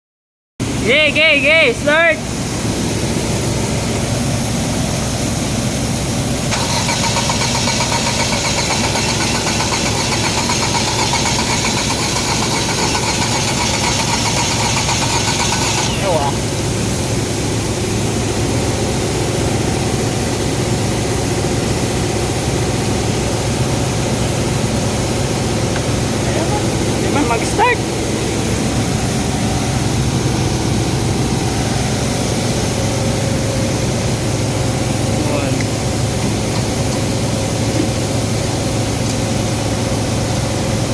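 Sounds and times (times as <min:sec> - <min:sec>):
misfiring car engine idling: 0:02.3 - 0:40.9
car engine misfiring: 0:06.5 - 0:16.4.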